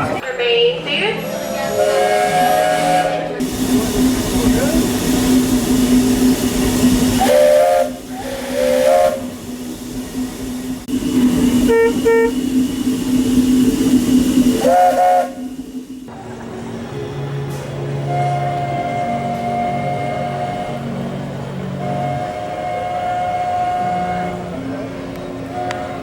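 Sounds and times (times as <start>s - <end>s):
steam whistle blasts: 1.1s - 13.2s, 14.3s - 15.9s, 18.0s - 21.1s, 21.8s - 24.6s, 25.4s - 26.0s
steam hiss: 1.2s - 16.2s
low hum: 3.5s - 16.2s.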